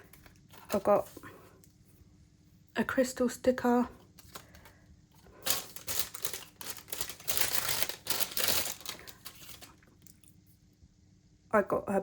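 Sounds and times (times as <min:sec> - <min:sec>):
packaging crinkling: 0:04.2 - 0:10.3.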